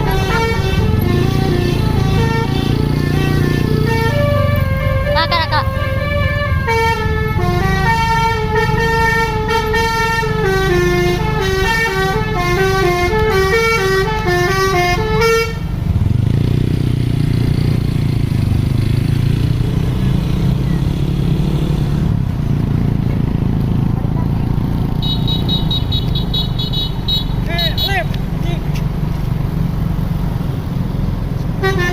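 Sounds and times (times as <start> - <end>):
multi-tone musical air horn: 0.0 - 15.8, 31.6 - 31.9
diesel bus engine running: 0.0 - 31.9.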